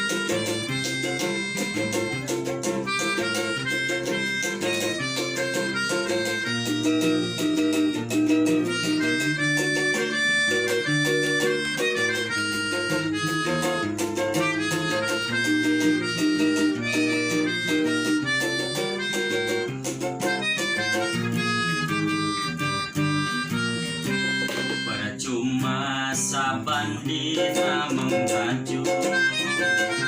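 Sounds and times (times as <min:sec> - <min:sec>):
instrumental melody with quick runs: 0:00.0 - 0:25.2, 0:27.1 - 0:30.0
plucked guitar-like accompaniment: 0:00.0 - 0:30.0.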